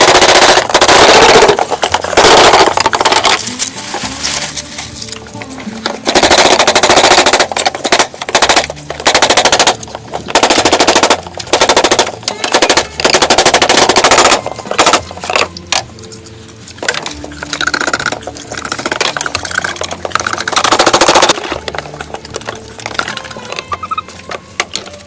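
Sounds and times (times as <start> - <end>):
rapid machine-like rattling: 0.0 - 3.6, 6.0 - 15.5, 16.8 - 23.4.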